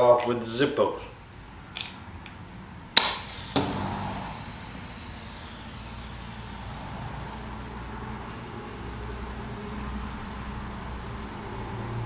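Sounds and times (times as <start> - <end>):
match striking and flaring: 3.0 - 8.1
match hissing burn: 3.0 - 8.5.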